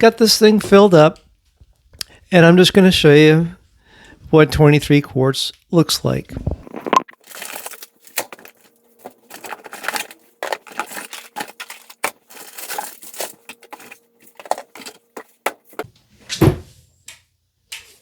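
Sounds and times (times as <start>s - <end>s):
food packages rustling and crinkling: 6.4s - 15.9s.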